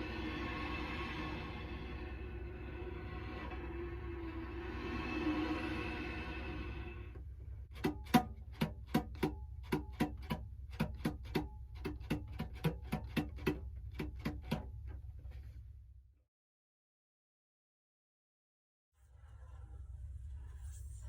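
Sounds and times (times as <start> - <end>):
low steady hum: 0.0 - 12.6.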